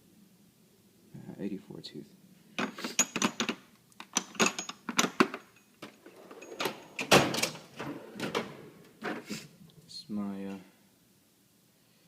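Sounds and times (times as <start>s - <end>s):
metal tools clinking: 2.6s - 7.5s
metal drawer scraping: 6.0s - 9.5s.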